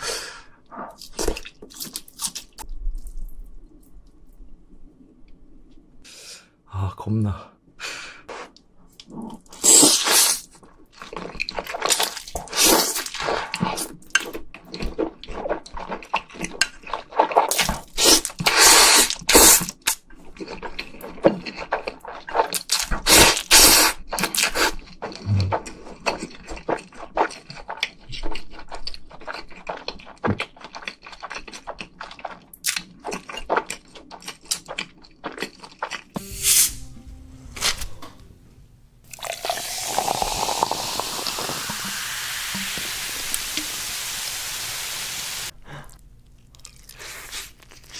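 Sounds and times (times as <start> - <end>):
slurping and chewing: 8.3 - 36.1, 39.1 - 44.0, 44.8 - 47.9.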